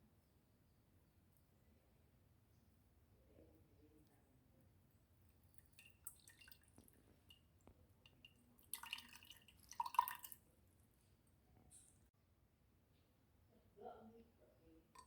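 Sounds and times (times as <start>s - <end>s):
liquid splashing into container: 5.5s - 10.4s.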